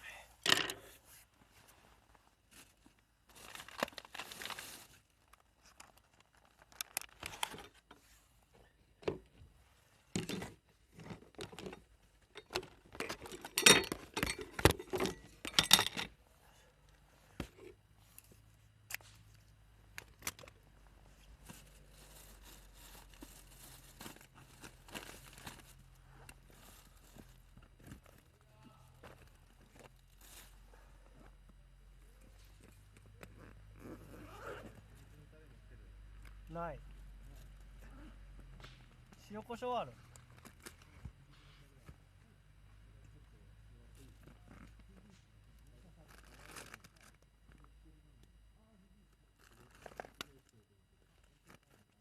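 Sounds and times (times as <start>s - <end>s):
plastic packaging crinkling: 3.3s - 7.6s
clicks and knocks of handling: 10.2s - 16.1s
faint low hum: 39.9s - 52.0s.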